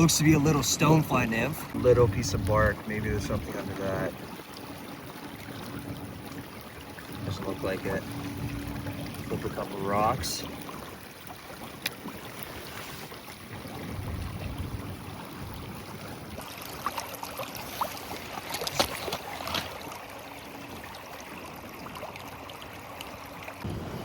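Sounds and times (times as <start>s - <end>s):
river water splashing: 0.0s - 24.0s
wind buffeting microphone: 1.7s - 16.6s, 23.6s - 24.0s.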